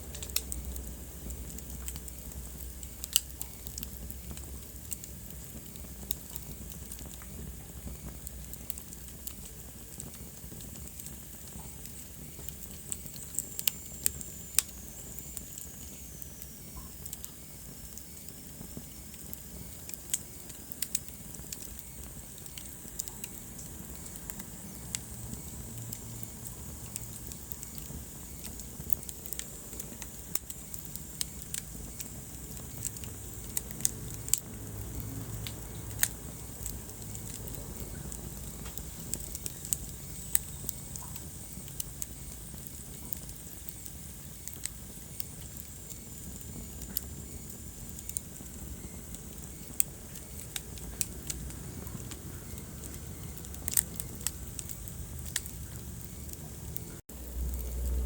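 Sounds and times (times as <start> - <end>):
fire crackling and popping: 0.0 - 58.0
low rumble of flames: 0.0 - 58.0.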